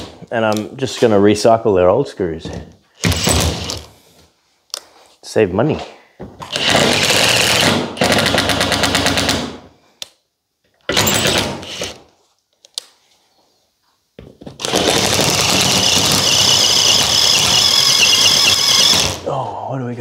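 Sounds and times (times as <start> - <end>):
power screwdriver driving screws: 14.6 - 19.2.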